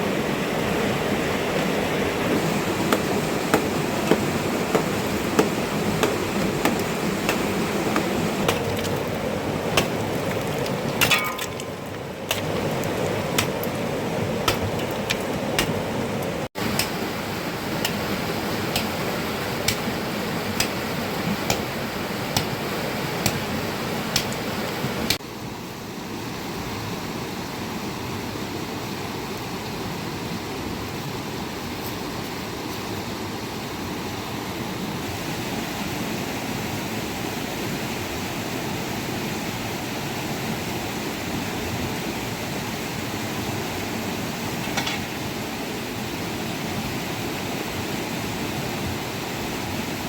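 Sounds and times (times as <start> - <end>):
rain and running water: 0.0 - 50.0
hand tool knocking: 2.4 - 8.9.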